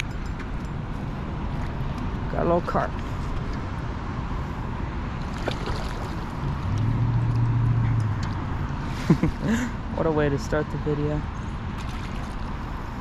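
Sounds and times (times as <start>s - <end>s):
road traffic rush: 0.0s - 13.0s
vehicle passing with engine hum: 0.0s - 13.0s.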